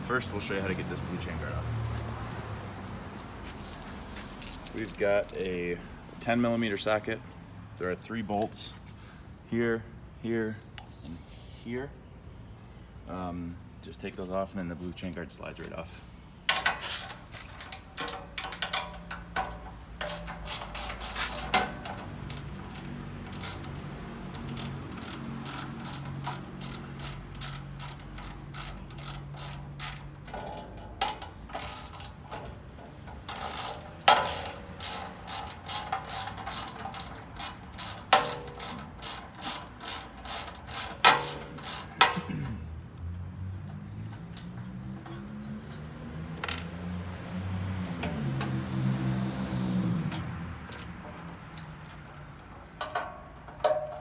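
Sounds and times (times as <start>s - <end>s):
socket ratchet clicking: 4.4s - 5.6s, 16.6s - 42.4s.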